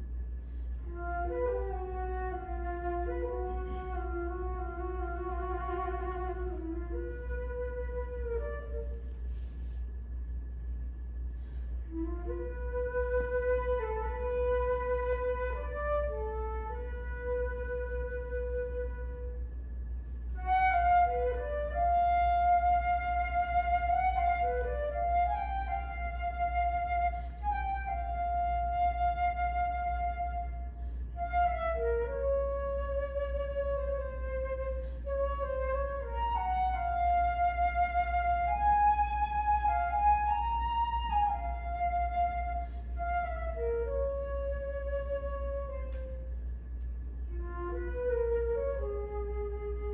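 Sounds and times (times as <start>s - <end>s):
solo flute melody: 0.0s - 9.9s, 11.4s - 49.9s.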